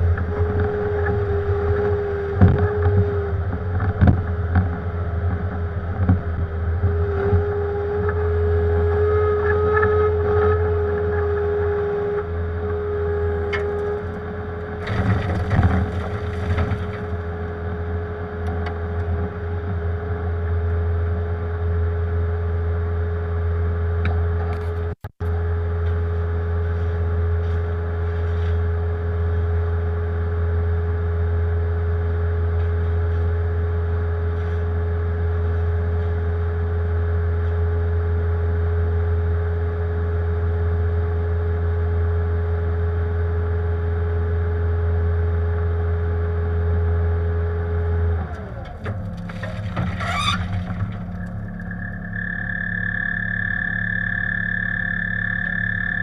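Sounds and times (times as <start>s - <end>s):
diesel engine running under load: 0.0s - 56.0s
scraping clatter: 13.5s - 17.6s, 48.4s - 52.1s.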